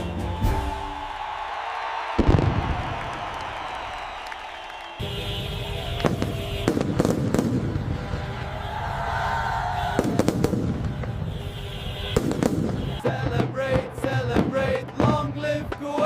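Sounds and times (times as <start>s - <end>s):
fireworks bangs and crackling: 2.1s - 4.2s, 5.0s - 8.9s, 9.8s - 16.0s.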